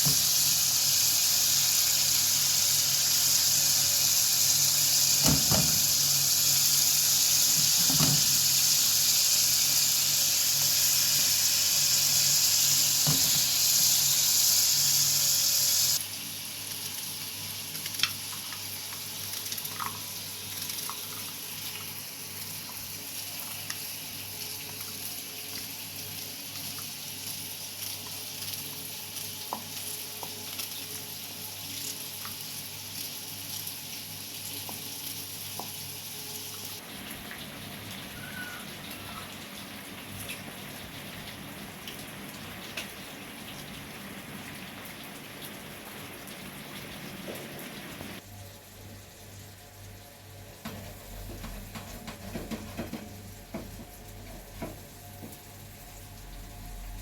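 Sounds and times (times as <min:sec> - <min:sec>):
food sizzling in oil: 0:00.0 - 0:48.3
oil crackling and popping: 0:16.7 - 0:25.8.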